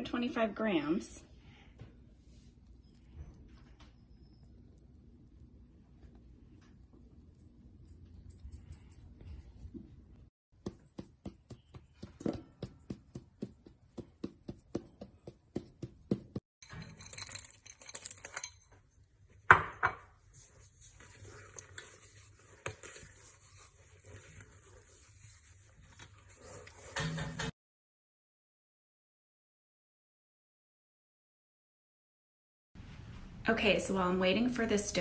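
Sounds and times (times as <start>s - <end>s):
kitchen clatter: 16.6s - 18.9s, 26.8s - 27.5s.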